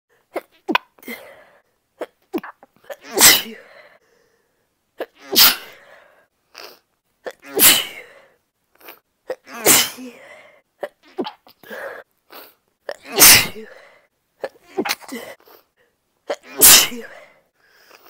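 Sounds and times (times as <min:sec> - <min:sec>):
woman sneezing: 0:03.0 - 0:03.7, 0:05.3 - 0:05.8, 0:07.5 - 0:08.1, 0:09.5 - 0:10.2, 0:13.0 - 0:13.8, 0:16.3 - 0:17.3.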